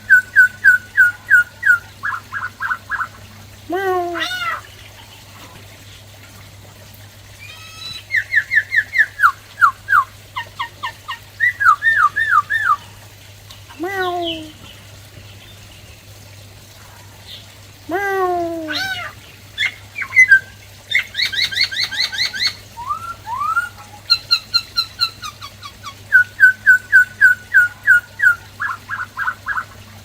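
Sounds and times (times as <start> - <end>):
bird singing varied song: 0.0 - 3.2, 7.9 - 10.1.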